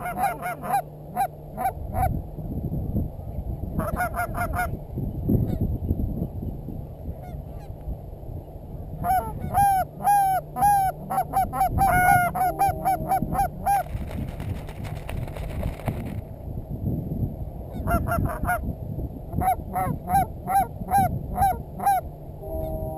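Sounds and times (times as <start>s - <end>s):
geese honking: 0.0s - 2.1s.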